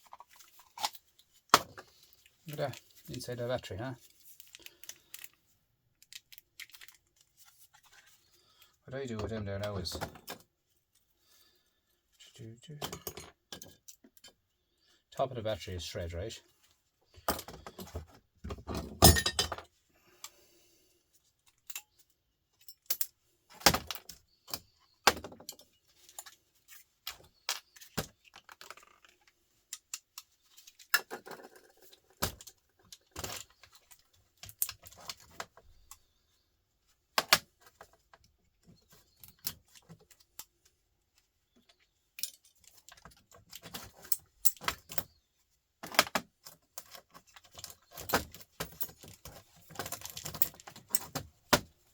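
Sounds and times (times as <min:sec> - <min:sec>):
plastic and metal parts clicking: 0:27.0 - 0:36.0, 0:45.8 - 0:51.7.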